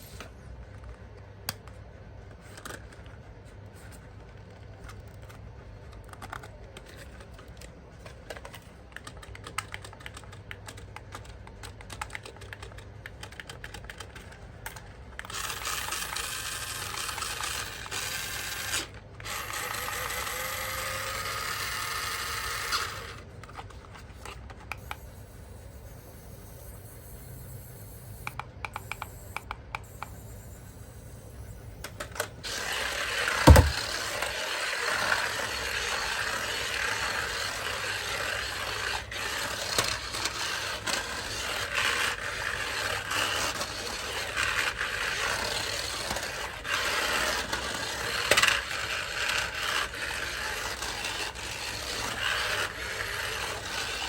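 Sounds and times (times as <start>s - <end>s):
toys and packaging rubbing: 2.2s - 9.2s, 22.3s - 27.2s, 32.4s - 34.0s, 36.3s - 54.0s
sharp knock: 33.5s - 33.8s.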